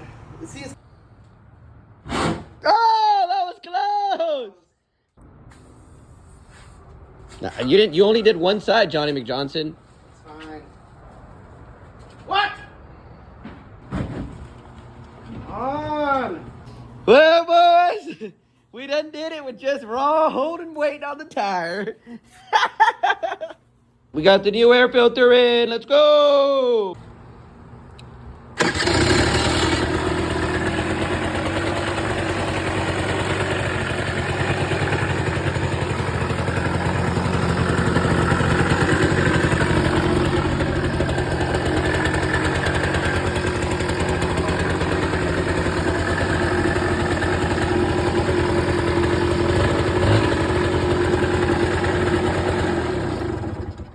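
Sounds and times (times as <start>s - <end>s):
small engine starting and idling: 28.5s - 53.9s.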